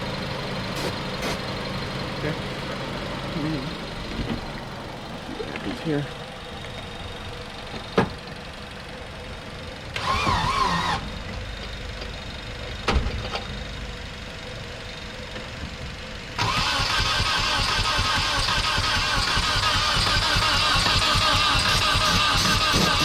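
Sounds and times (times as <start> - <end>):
starter cranking engine: 9.9 - 11.1, 16.4 - 23.0
thump: 12.9 - 13.4.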